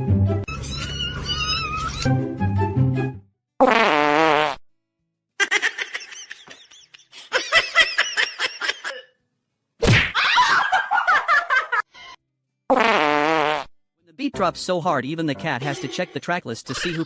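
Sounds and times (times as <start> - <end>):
bursts of laughter: 15.6 - 17.0.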